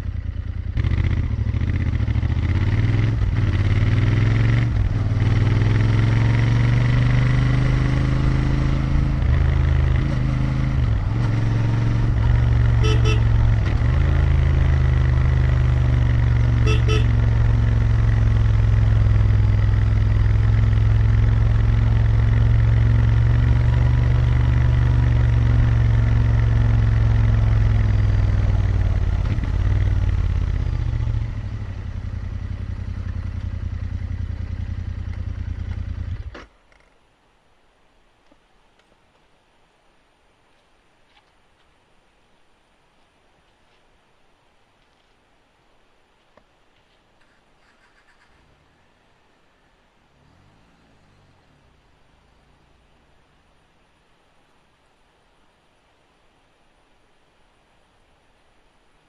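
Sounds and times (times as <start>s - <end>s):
motorcycle engine revving: 0.0s - 36.4s
horn sounding: 12.6s - 14.0s, 16.4s - 17.7s.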